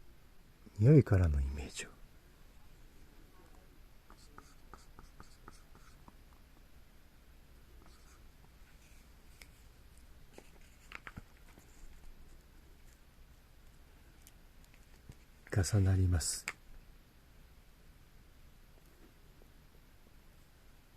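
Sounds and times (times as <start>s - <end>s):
low room hum: 0.0s - 20.9s
faint clicks and scratchy taps: 4.1s - 6.7s, 9.3s - 11.7s, 13.6s - 15.5s.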